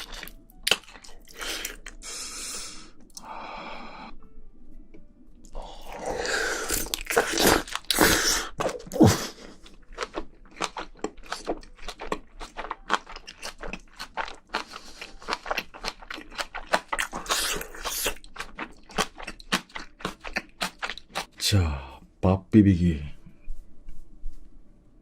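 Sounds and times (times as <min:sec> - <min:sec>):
close chewing and crunching: 0:00.0 - 0:02.2, 0:05.4 - 0:21.5.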